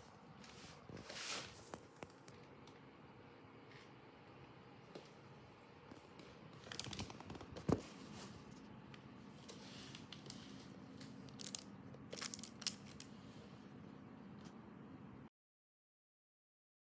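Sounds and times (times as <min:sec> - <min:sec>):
packaging rustling and crinkling: 0:06.6 - 0:08.5, 0:09.4 - 0:13.1.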